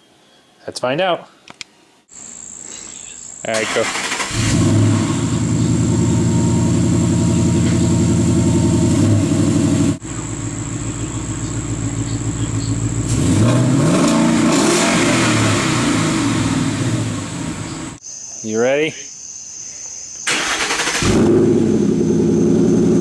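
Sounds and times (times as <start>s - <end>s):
car engine idling and revving: 4.1s - 18.0s, 20.6s - 23.0s.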